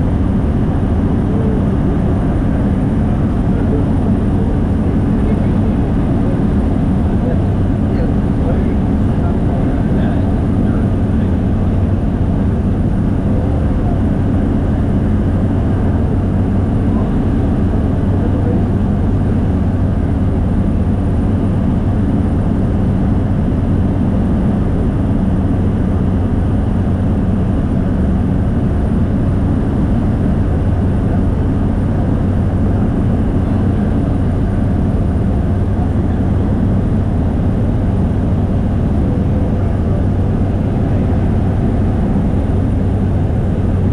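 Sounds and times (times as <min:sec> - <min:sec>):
propeller aircraft engine drone: 0:00.0 - 0:43.9.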